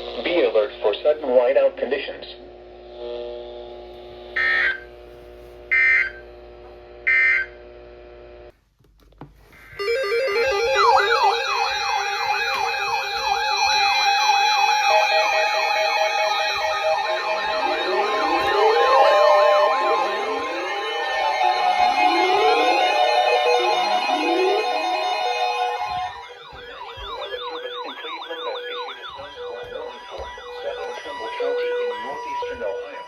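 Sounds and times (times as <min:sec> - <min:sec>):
steady held tones: 0:09.6 - 0:33.0
electronic music with siren-like sweeps: 0:09.7 - 0:33.0
screeching data bursts: 0:09.8 - 0:33.0.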